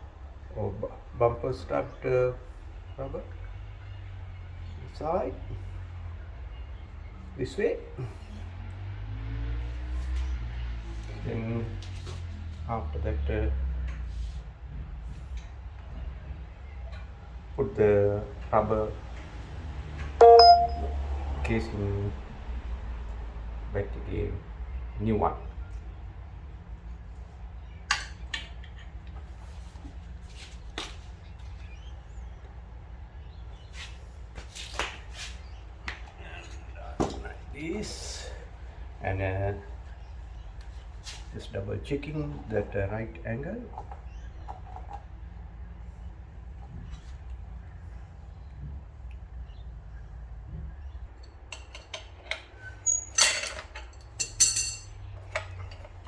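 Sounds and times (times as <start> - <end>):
light clicks and knocks of parts: 51.0 - 56.0
metal tools clinking and clanking: 51.2 - 56.0.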